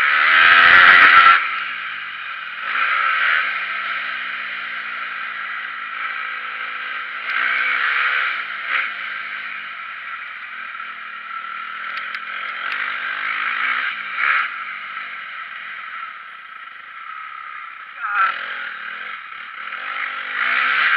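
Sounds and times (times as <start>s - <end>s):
dirt bike engine revving: 0.0s - 20.9s
sharp clicks: 11.9s - 12.9s.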